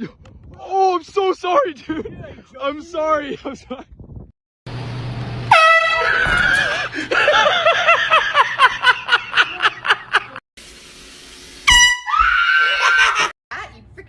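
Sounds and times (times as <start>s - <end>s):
air horn blast: 5.5s - 7.0s, 11.6s - 12.2s
person crying out rapidly: 12.2s - 13.3s.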